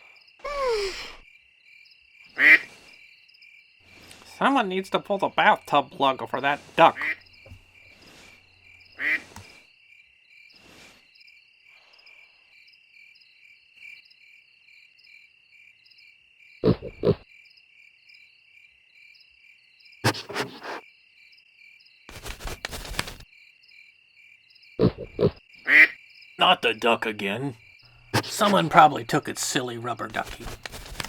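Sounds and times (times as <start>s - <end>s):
crickets chirping: 0.0s - 31.0s
cartoon duck quacking: 6.9s - 7.2s.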